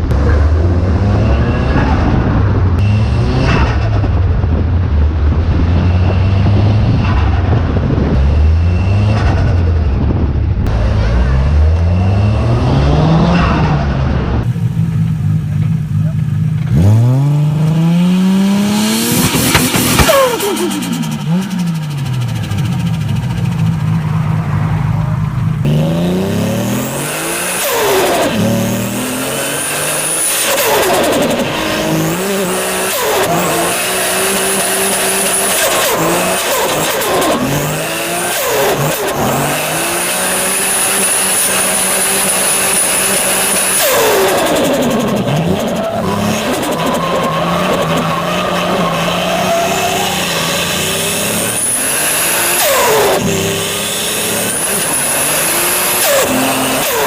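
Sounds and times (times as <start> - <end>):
car engine revving: 0.0 - 57.0.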